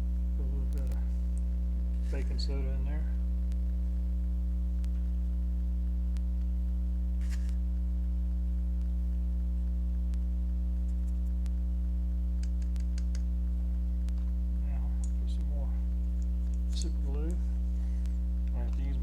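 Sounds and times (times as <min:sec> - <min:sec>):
electrical mains hum: 0:00.0 - 0:19.0
faint small clicks: 0:04.8 - 0:05.2, 0:10.8 - 0:11.6, 0:12.3 - 0:14.4, 0:15.0 - 0:18.9
scratchy rustle of handling: 0:07.1 - 0:07.7.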